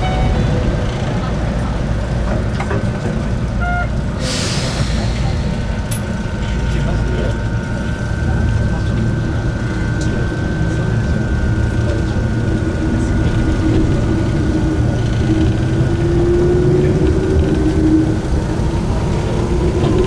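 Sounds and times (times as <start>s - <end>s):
train motor tone: 0.0s - 6.8s
train wheels rumbling on track: 0.0s - 20.0s.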